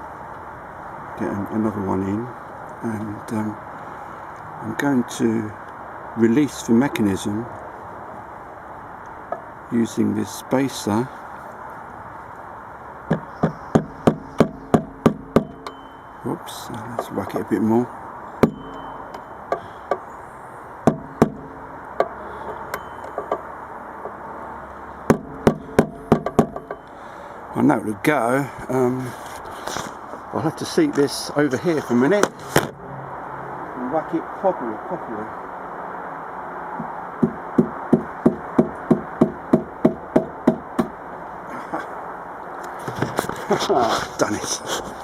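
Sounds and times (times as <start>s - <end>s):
hammer knocks on metal: 13.1s - 15.8s, 18.4s - 18.9s, 20.9s - 22.6s, 25.1s - 26.8s, 36.8s - 40.9s
hammer striking metal spacer: 15.3s - 16.1s, 18.4s - 19.6s.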